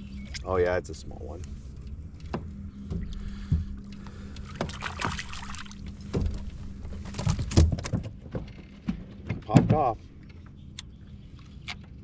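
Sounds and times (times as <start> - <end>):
steady low hum: 0.0 - 12.0
fish splashing at surface: 4.5 - 5.8.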